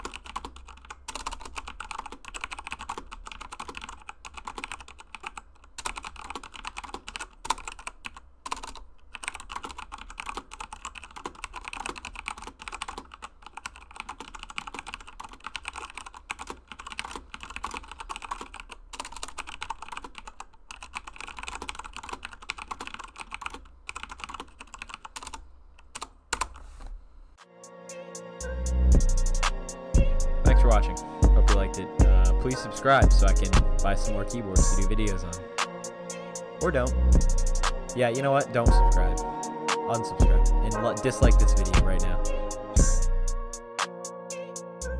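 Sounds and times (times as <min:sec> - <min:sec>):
fast mechanical keyboard typing: 0:00.0 - 0:26.6, 0:32.5 - 0:35.9.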